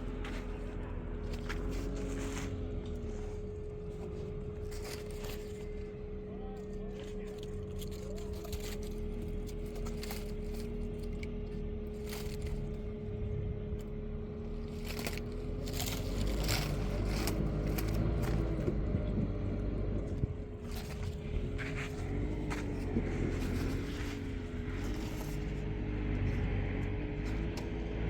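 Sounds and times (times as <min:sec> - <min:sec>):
knocks and scrapes: 0:00.0 - 0:12.9, 0:14.4 - 0:26.4
tractor engine running: 0:00.0 - 0:28.0.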